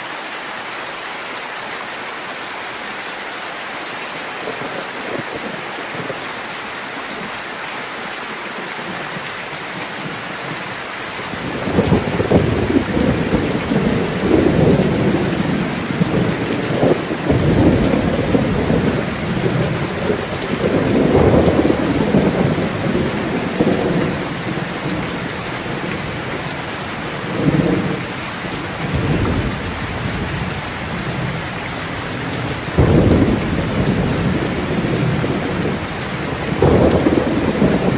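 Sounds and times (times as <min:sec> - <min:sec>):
steady rain: 0:00.0 - 0:37.9
rolling thunder: 0:11.3 - 0:28.0, 0:28.8 - 0:37.9.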